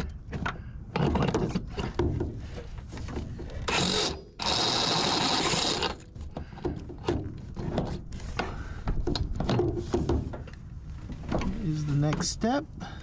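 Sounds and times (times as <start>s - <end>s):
power drill spinning: 3.6s - 6.0s.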